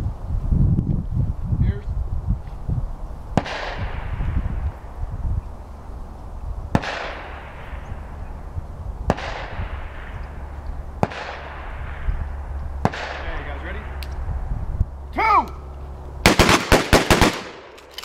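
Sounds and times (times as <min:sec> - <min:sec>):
shotgun shots echoing: 0:03.4 - 0:04.2, 0:06.7 - 0:07.9, 0:09.1 - 0:10.2, 0:11.0 - 0:12.1, 0:12.8 - 0:14.0, 0:16.2 - 0:17.8.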